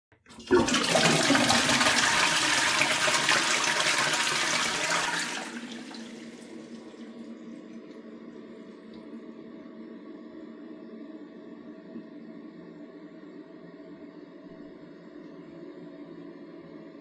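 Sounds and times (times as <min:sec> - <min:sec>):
toilet flushing: 0:00.2 - 0:09.3
toilet tank refilling hiss: 0:00.3 - 0:07.2.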